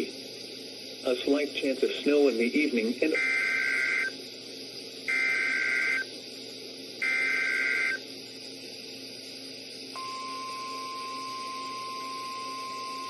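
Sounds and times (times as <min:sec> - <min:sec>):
faint radio hiss and hum: 0:00.0 - 0:13.0
screeching digital data tones: 0:03.1 - 0:04.2, 0:05.1 - 0:06.1, 0:07.0 - 0:08.0.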